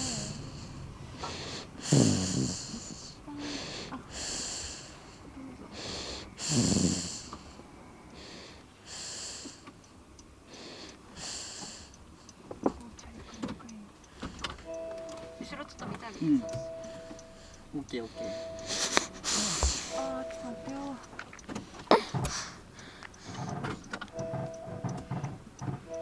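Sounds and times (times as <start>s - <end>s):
person snoring: 0.0s - 5.1s, 5.7s - 7.4s, 17.4s - 20.2s.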